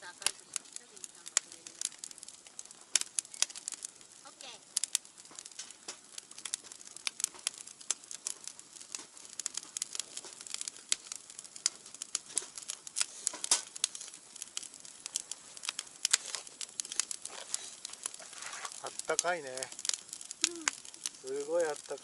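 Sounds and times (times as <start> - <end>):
wood fire crackling and popping: 0.0 - 22.0
faint hiss: 12.1 - 22.0.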